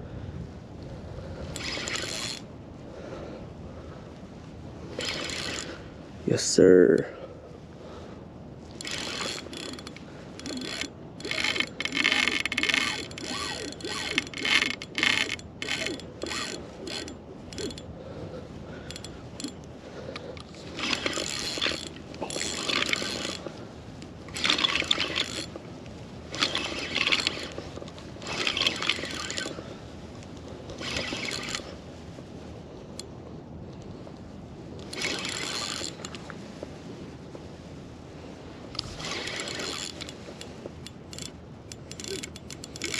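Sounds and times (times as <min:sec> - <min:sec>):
fishing reel ratcheting: 0:01.5 - 0:02.5, 0:04.9 - 0:05.8, 0:08.7 - 0:17.9, 0:18.8 - 0:23.5, 0:24.3 - 0:25.6, 0:26.3 - 0:29.7, 0:30.7 - 0:31.7, 0:34.8 - 0:36.2, 0:38.7 - 0:42.9.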